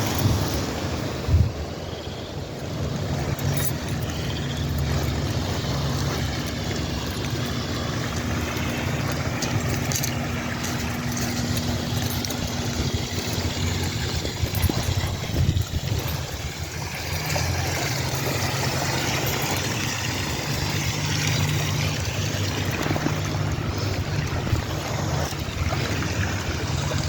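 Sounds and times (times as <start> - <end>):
wind rushing over microphone: 0.0 - 3.5, 12.4 - 19.1.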